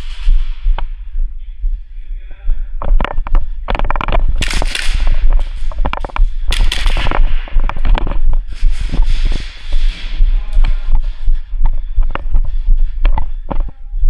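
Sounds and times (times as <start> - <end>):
airsoft gun shots: 4.4 - 5.5, 6.5 - 7.5.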